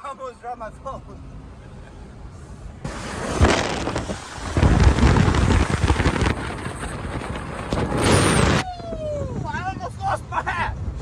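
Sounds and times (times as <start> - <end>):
wind: 0.0 - 11.0
deep rumble: 2.9 - 9.4.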